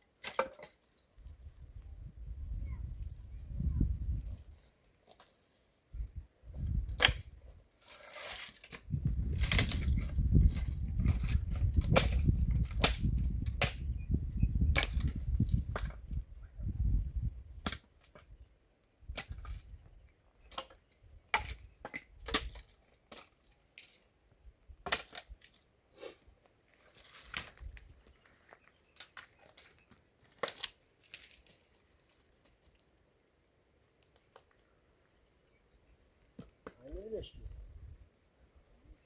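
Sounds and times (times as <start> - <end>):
firewood cracking and knocking: 8.4 - 13.8.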